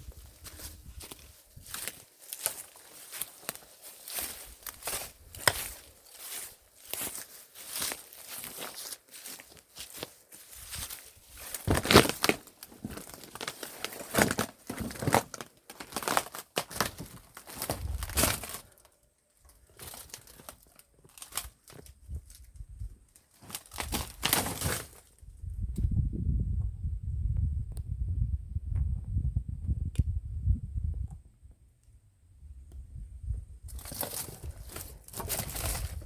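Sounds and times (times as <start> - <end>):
footsteps crunching over debris: 0.0 - 25.2, 33.7 - 36.0.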